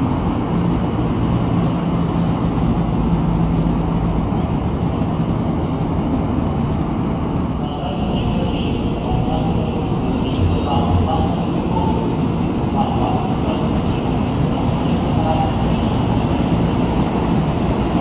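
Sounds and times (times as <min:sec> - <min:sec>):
electric train rumbling: 0:00.0 - 0:18.0
steady hum: 0:07.5 - 0:18.0.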